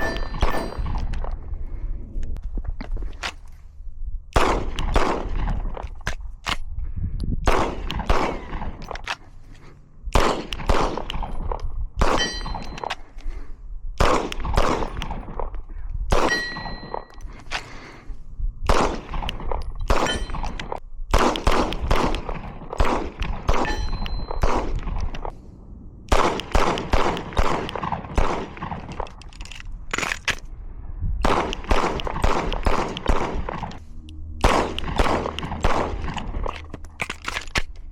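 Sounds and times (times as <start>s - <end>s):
steel targets ringing: 0.0s - 1.0s, 12.2s - 12.8s, 16.3s - 17.1s, 20.0s - 20.5s, 23.6s - 24.4s
pistol shots: 4.4s - 5.6s, 7.4s - 8.9s, 10.1s - 12.9s, 14.0s - 15.5s, 16.1s - 17.0s, 18.7s - 25.3s, 26.1s - 29.0s, 31.2s - 33.8s, 34.4s - 36.4s.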